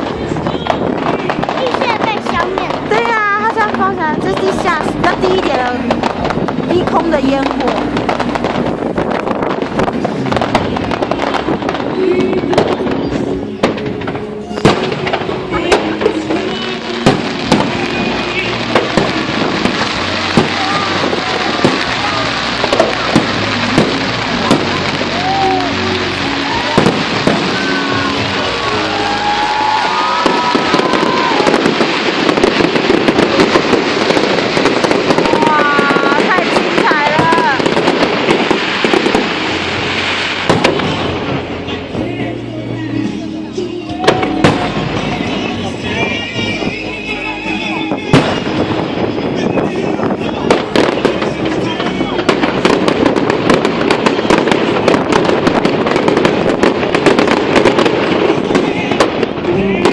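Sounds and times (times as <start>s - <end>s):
fireworks crackling: 0.0s - 59.9s
firework whistles: 10.1s - 41.2s.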